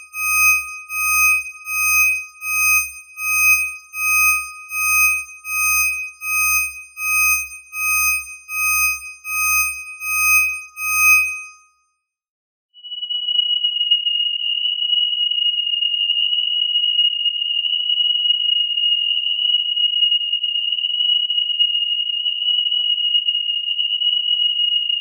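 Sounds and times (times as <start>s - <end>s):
high-pitched alarm beeping: 0.0s - 11.7s.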